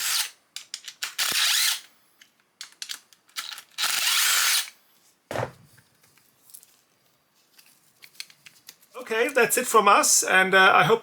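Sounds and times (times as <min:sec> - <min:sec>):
small handling clicks: 0:02.2 - 0:03.8
dull thud: 0:05.3 - 0:05.7.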